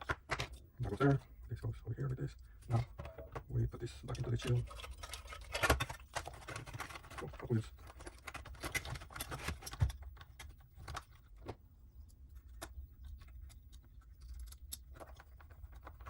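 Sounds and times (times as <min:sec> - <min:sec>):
small plastic parts clicking: 0:05.2 - 0:11.5, 0:12.1 - 0:16.0.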